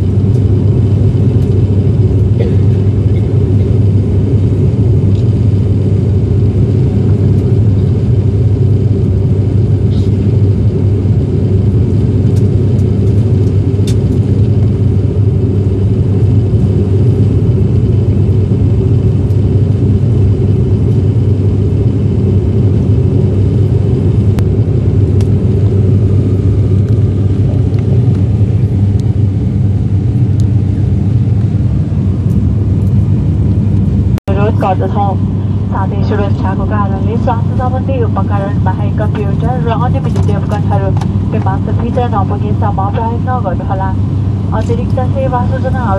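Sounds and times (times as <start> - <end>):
propeller engine drone: 0.0 - 45.9.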